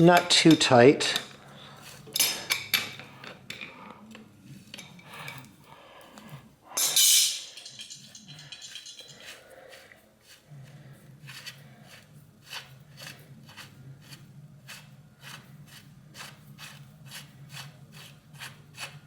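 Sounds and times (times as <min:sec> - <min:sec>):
metallic clinks of bicycle parts: 0:02.1 - 0:05.5, 0:06.8 - 0:09.4
metal scrape: 0:06.8 - 0:10.5.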